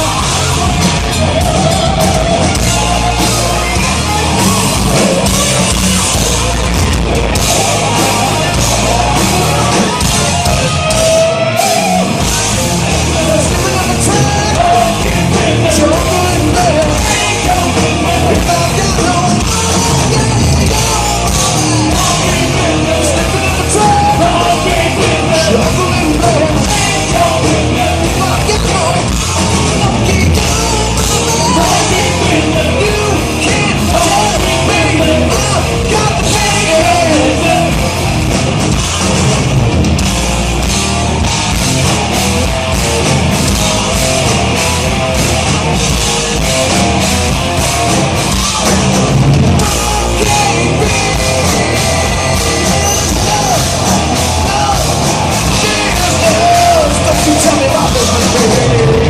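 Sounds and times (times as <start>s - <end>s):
loud rock band playing: 0.0s - 59.0s
person yelling singing: 7.5s - 37.9s, 49.6s - 59.0s.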